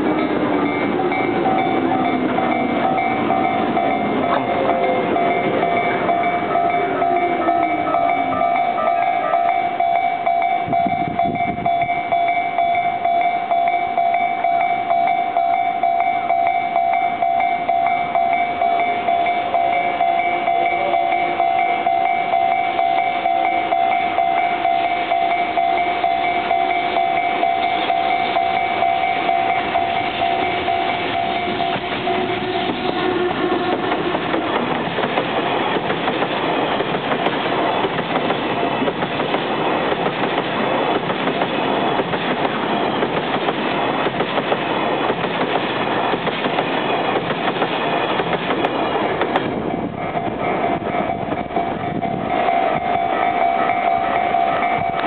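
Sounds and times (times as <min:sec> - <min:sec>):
level crossing warning bell: 0:00.0 - 0:55.0
train rail clatter: 0:00.0 - 0:55.0
train motor whine: 0:24.4 - 0:55.0.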